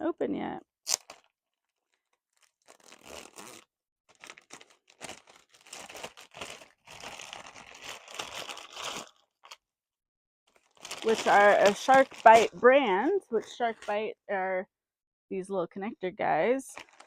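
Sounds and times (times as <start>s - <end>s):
packaging crinkling and tearing: 0.9s - 9.6s, 10.5s - 14.0s, 16.8s - 17.0s.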